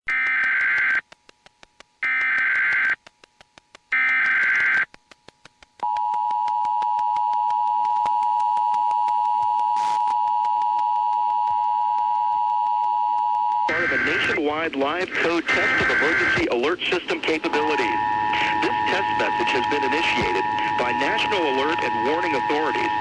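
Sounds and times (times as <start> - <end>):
rapid clicking: 0.1 - 9.4
screeching digital data tones: 15.2 - 23.0
two-tone attention signal: 17.3 - 23.0.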